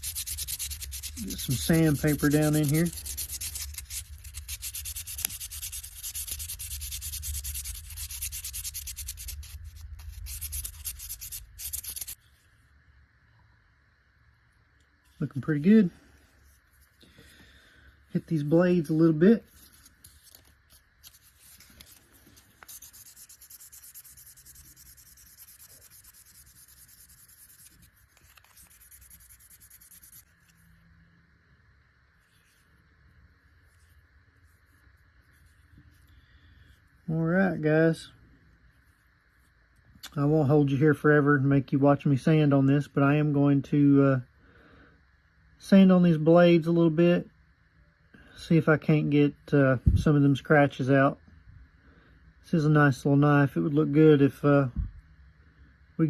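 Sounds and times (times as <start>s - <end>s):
sandpaper scrubbing metal: 0.0s - 12.2s, 22.6s - 30.3s.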